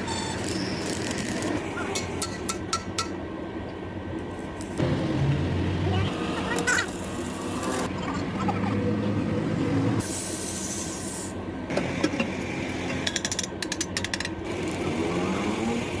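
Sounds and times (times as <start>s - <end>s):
hiss: 10.0s - 11.4s.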